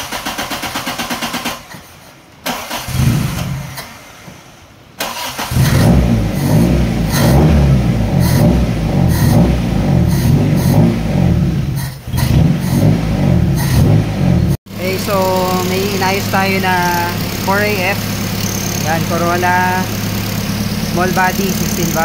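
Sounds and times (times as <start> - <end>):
car engine cranking on starter: 0.0 - 9.5, 14.7 - 22.0
engine running unevenly: 5.6 - 22.0.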